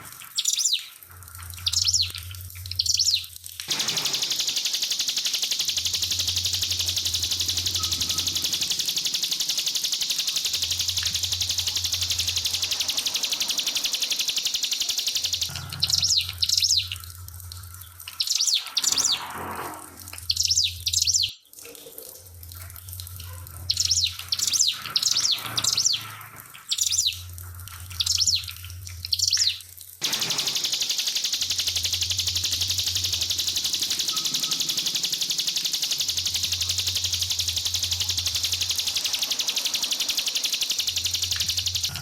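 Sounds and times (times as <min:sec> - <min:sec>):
trickling water: 0:00.0 - 0:42.0
bird singing sharp high notes: 0:02.8 - 0:16.9, 0:29.2 - 0:42.0
steady hiss: 0:03.5 - 0:15.5, 0:29.9 - 0:42.0.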